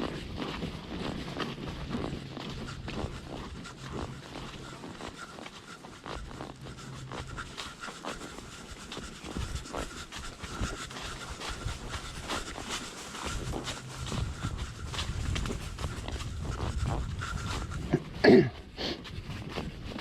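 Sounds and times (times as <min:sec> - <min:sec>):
hoofbeats on dirt: 0:00.0 - 0:20.0
horse breathing hard: 0:00.0 - 0:20.0.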